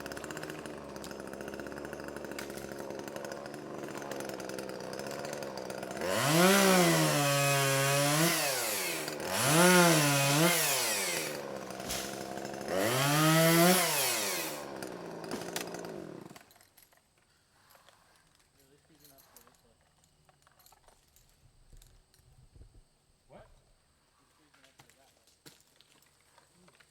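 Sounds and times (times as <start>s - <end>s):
chainsaw idling and revving: 0.0s - 16.6s.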